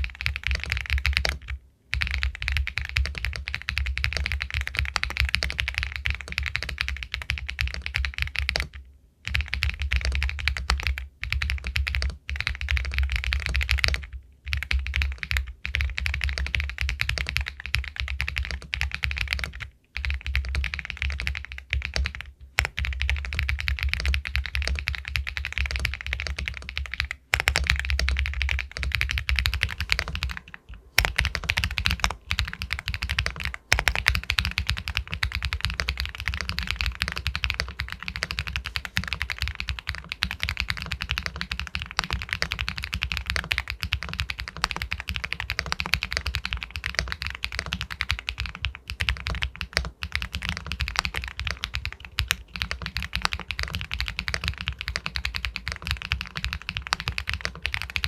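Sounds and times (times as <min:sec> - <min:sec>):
fast typing on mechanical keyboard: 0:00.0 - 0:58.0.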